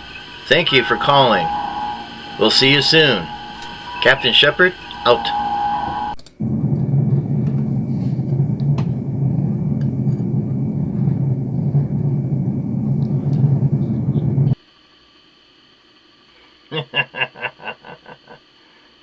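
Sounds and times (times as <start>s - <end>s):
loud low rumble: 0.0s - 14.6s.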